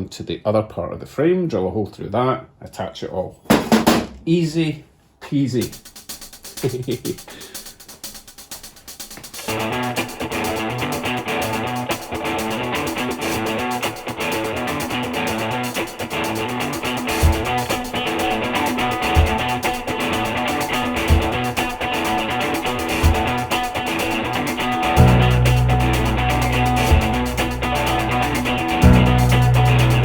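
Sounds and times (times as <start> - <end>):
rock music with guitar: 9.5 - 30.0
deep beat: 15.2 - 30.0.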